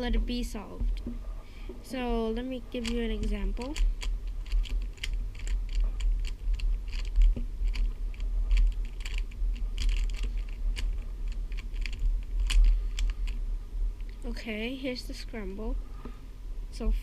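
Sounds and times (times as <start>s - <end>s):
low steady hum: 0.0s - 17.0s
puzzle cube clicking: 2.8s - 13.4s.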